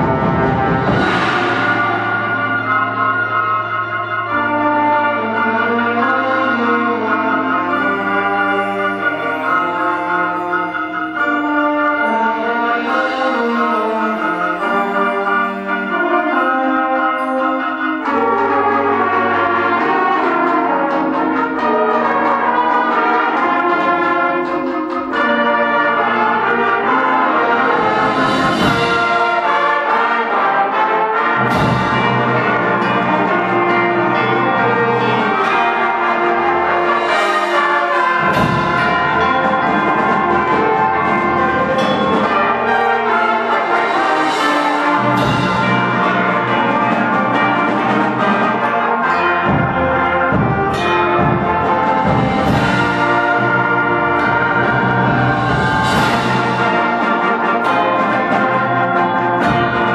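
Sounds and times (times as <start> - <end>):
bell-like percussion ringing: 0.0 - 59.9
concert band brass chords: 0.0 - 59.9
cymbal crashes: 27.6 - 29.6, 36.3 - 48.2, 49.5 - 57.7.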